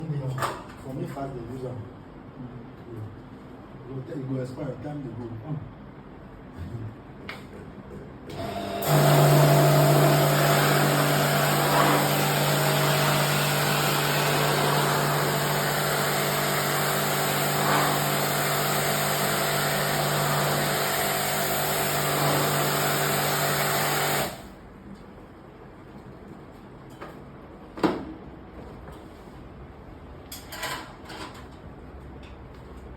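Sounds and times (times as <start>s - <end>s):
machine motor humming and hissing: 8.3s - 24.5s.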